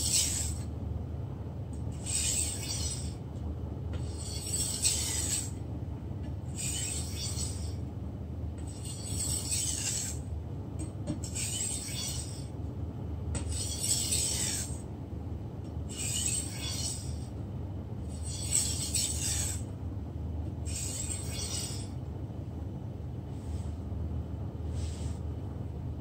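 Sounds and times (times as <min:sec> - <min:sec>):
knife scraping on whetstone: 0:00.0 - 0:00.6, 0:02.0 - 0:03.2, 0:04.0 - 0:05.6, 0:06.6 - 0:07.8, 0:08.6 - 0:10.3, 0:11.2 - 0:12.5, 0:13.4 - 0:14.8, 0:15.9 - 0:17.3, 0:18.1 - 0:19.6, 0:20.7 - 0:22.0
steady low hum: 0:00.0 - 0:26.0.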